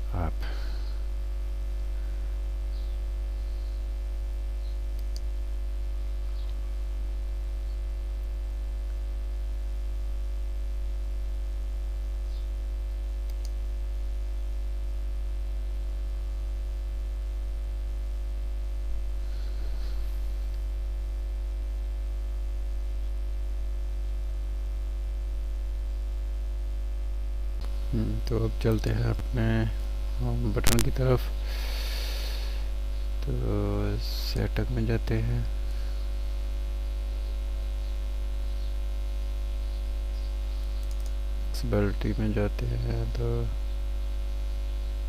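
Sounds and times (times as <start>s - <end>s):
electrical mains hum: 0.0s - 45.0s
static hiss: 0.0s - 45.0s
faint clicks: 5.0s - 5.3s, 13.3s - 13.6s, 40.2s - 41.2s.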